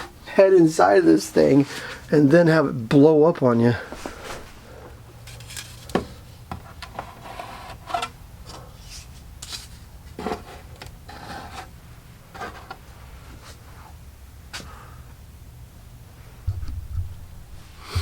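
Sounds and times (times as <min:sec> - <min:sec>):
steady low hum: 0:14.0 - 0:18.0.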